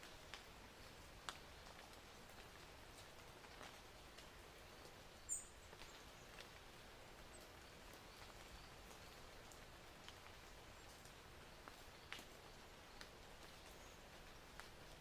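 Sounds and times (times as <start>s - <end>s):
faint steady hiss: 0.0s - 15.0s
faint ticks: 8.0s - 15.0s.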